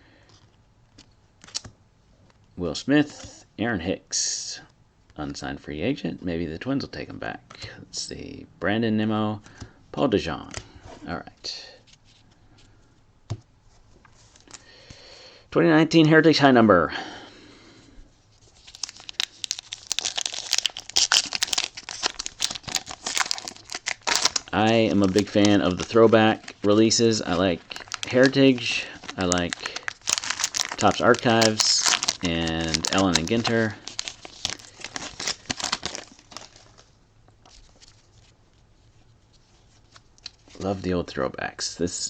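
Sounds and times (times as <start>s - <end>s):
card pack wrapper crinkling: 18.4s - 36.9s.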